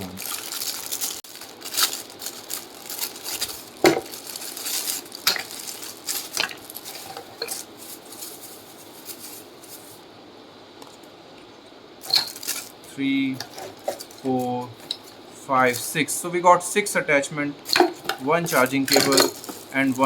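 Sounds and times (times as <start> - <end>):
plastic attachments clicking and knocking: 17.7 - 20.0.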